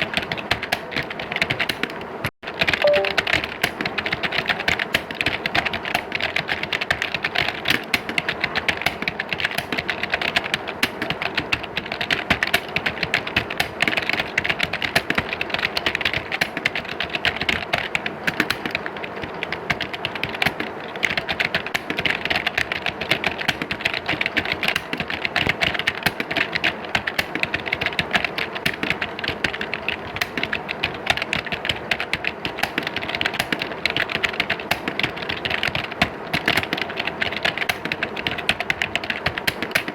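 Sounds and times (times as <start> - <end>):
keyboard key clicks: 2.6 - 3.8.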